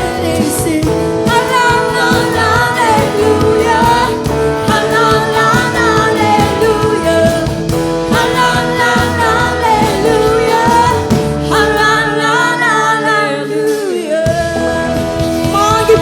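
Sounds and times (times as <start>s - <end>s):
drum and bass beat: 0.0s - 12.3s
person singing: 0.0s - 16.0s.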